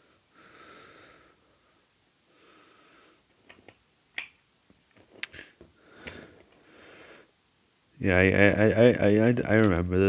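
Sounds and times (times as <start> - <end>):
soft breaths through nose: 0.0 - 3.4, 5.3 - 7.4.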